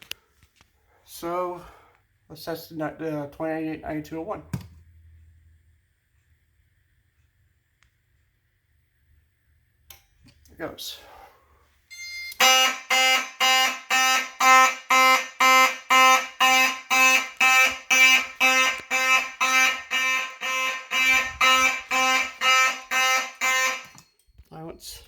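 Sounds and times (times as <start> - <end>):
fire alarm horns buzzing: 11.9 - 25.0.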